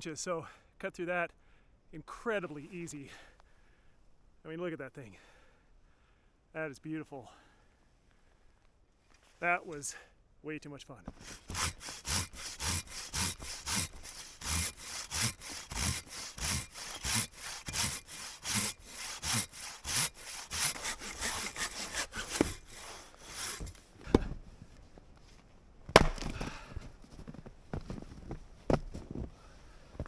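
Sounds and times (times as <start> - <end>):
pruning saw cutting a log: 11.1 - 24.8, 25.9 - 26.6
sharp thumps: 11.1 - 25.0, 25.8 - 29.3.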